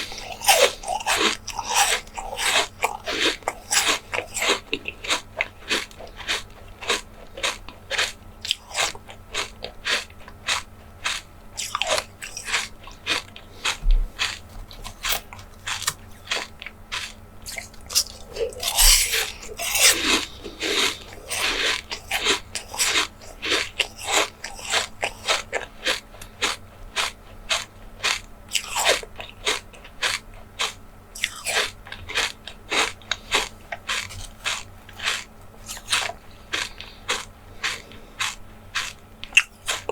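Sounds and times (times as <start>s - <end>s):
crunchy bites and chewing: 0.0s - 39.9s.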